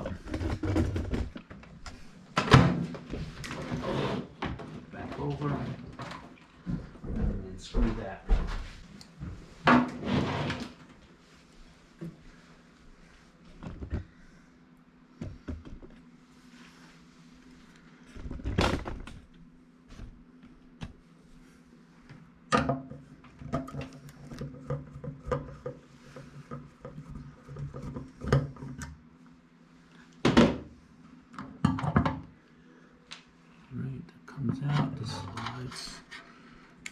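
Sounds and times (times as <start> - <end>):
microwave parts knocking and clunking: 31.4 - 32.3.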